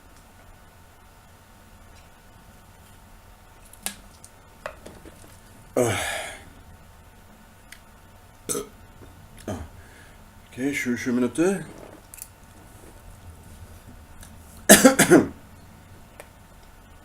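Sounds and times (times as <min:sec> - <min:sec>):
man burping: 0:05.8 - 0:06.5, 0:08.5 - 0:08.8, 0:09.4 - 0:09.8, 0:14.7 - 0:15.4.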